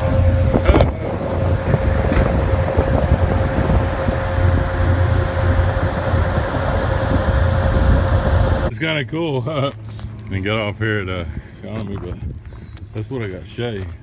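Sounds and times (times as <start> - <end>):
high whine: 0.0 - 8.7
vehicle engine rumble: 0.0 - 14.0.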